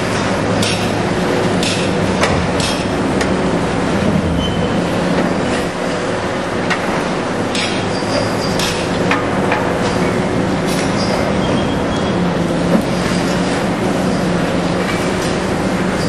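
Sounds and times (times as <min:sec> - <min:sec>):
diesel engine hum: 0:00.0 - 0:07.6
high metal squeals: 0:04.2 - 0:06.2.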